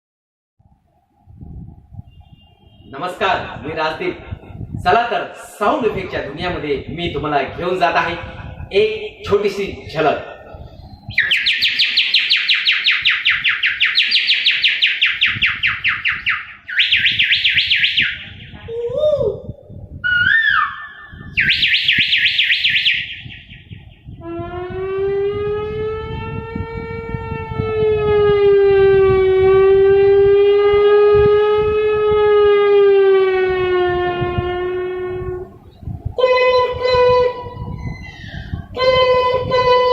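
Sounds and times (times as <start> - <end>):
mouth birdsong trills: 10.3 - 18.6, 20.1 - 24.3, 35.6 - 39.3
siren-like mouth tone: 10.3 - 39.9.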